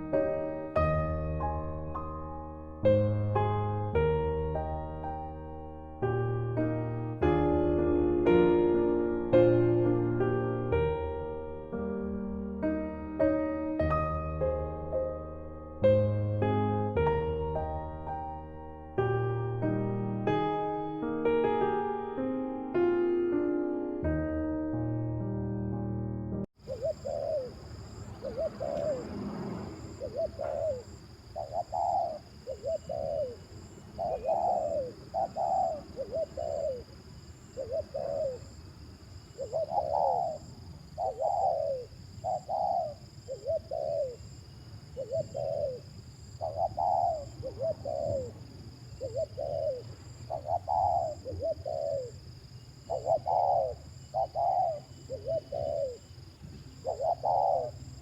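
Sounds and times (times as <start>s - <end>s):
dove cooing: 26.6s - 38.6s, 39.3s - 56.1s, 56.7s - 58.0s.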